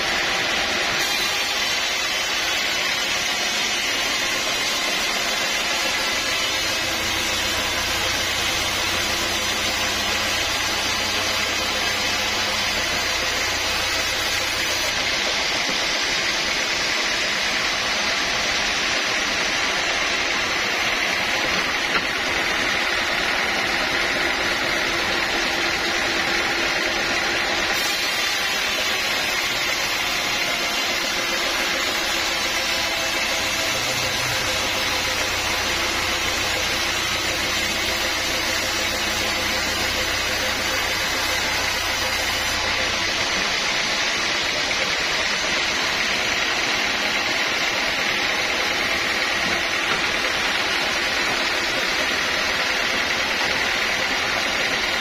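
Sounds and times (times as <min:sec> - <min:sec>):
saw hissing: 0:00.0 - 0:55.0
low motor hum: 0:29.9 - 0:44.3.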